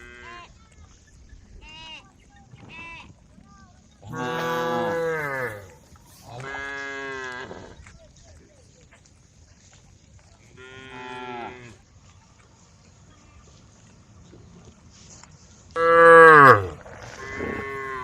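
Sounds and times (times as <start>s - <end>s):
cows mooing: 4.1s - 5.8s, 15.8s - 18.0s.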